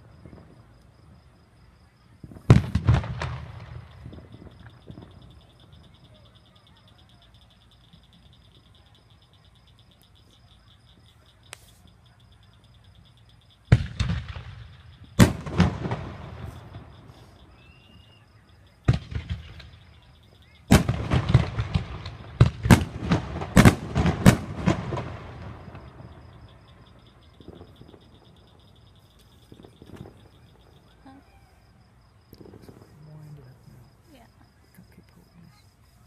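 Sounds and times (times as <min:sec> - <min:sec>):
fireworks bangs and crackling: 0:00.0 - 0:01.4, 0:02.1 - 0:05.9, 0:13.6 - 0:18.0, 0:18.8 - 0:30.8, 0:32.3 - 0:34.2.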